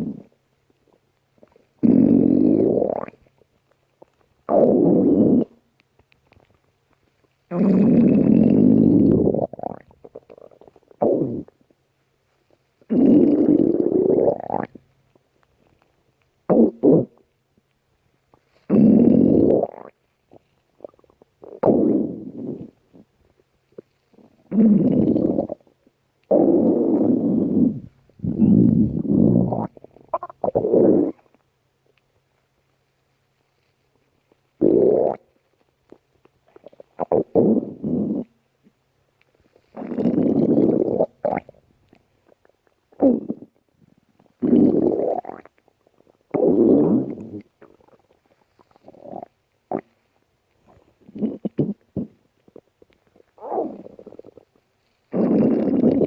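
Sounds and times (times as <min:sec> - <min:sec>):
stomach growling: 0:00.0 - 0:03.4, 0:04.0 - 0:05.6, 0:07.5 - 0:11.8, 0:12.8 - 0:14.8, 0:18.6 - 0:31.4, 0:34.6 - 0:38.4, 0:39.5 - 0:56.0.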